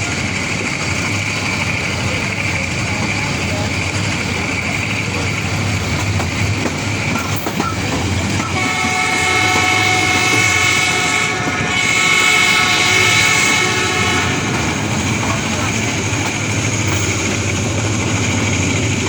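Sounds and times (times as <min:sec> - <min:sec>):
moving train clickety-clack: 0:00.0 - 0:19.0
locomotive horn blasts: 0:08.4 - 0:15.2.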